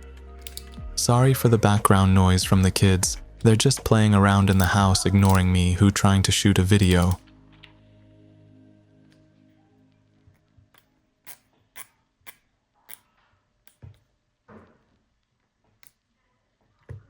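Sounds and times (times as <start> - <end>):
small parts and tools clicking: 0.4 - 0.8, 3.4 - 5.6, 6.8 - 7.8, 10.3 - 14.2, 15.0 - 16.1.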